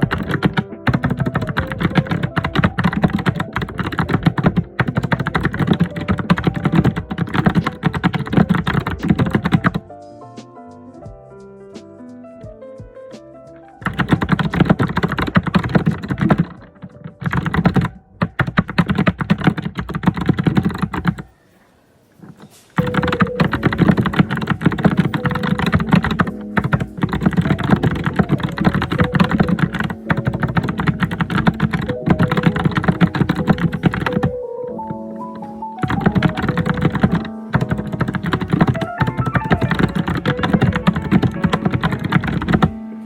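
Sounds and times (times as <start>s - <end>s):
fast typing on keyboard: 0.0s - 9.8s, 13.8s - 21.3s, 22.3s - 42.8s.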